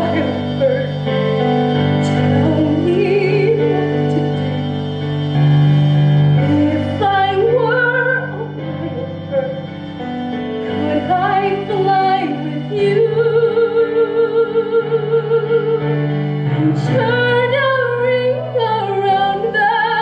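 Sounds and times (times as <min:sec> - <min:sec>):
woman singing slow melody: 0:00.0 - 0:01.1, 0:02.0 - 0:04.8, 0:06.4 - 0:09.7, 0:10.7 - 0:20.0
sustained instrumental accompaniment: 0:00.0 - 0:20.0.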